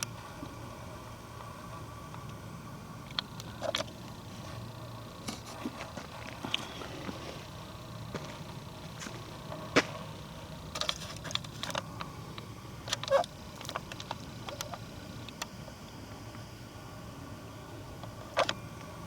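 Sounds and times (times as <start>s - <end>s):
footsteps crunching on forest trail: 5.2s - 10.0s.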